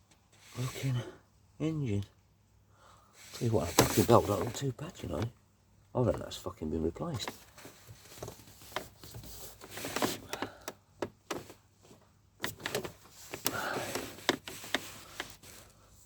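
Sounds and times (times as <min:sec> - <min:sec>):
rubbing or scraping: 0:03.2 - 0:04.7, 0:07.2 - 0:10.4, 0:12.4 - 0:15.7.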